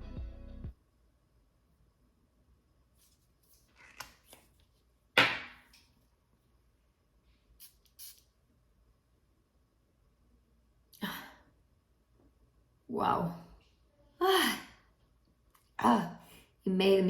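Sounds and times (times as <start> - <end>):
perfume spray spritz: 7.6 - 8.3.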